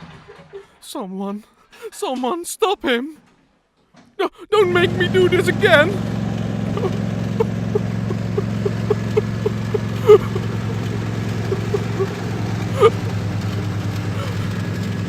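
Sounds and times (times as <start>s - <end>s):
lawnmower engine humming: 4.6s - 15.0s
light regular ticking: 6.2s - 15.0s.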